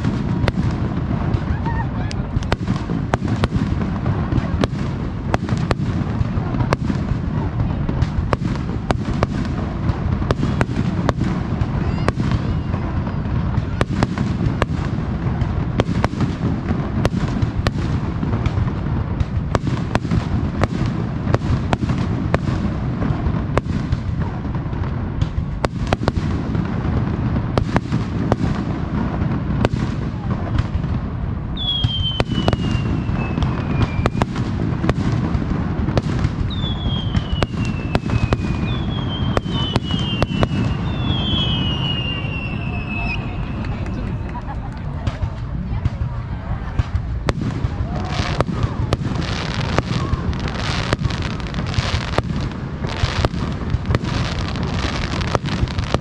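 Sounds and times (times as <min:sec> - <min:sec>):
fireworks bangs: 0:00.0 - 0:56.0
descending firework whistle: 0:10.3 - 0:14.9, 0:31.5 - 0:34.5, 0:36.0 - 0:44.4, 0:47.6 - 0:56.0.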